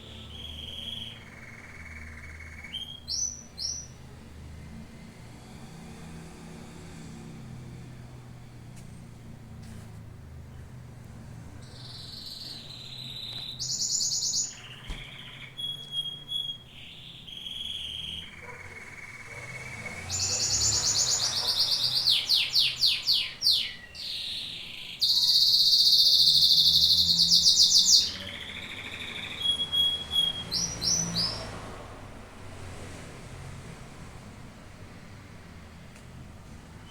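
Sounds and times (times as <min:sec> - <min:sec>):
canary singing: 0:00.0 - 0:04.0, 0:11.6 - 0:31.5.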